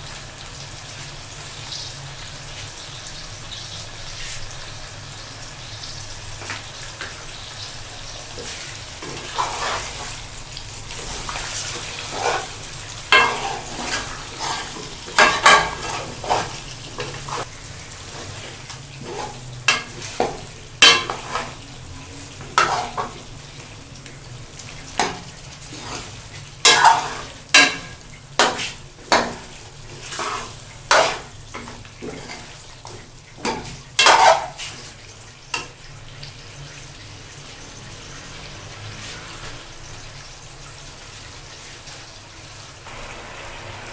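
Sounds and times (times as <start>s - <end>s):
chicken sizzling in hot oil: 0.0s - 43.9s
spoon scraping a pot: 8.4s - 10.2s, 11.0s - 17.5s, 19.0s - 21.7s, 22.4s - 23.2s, 25.0s - 32.6s, 33.4s - 35.0s.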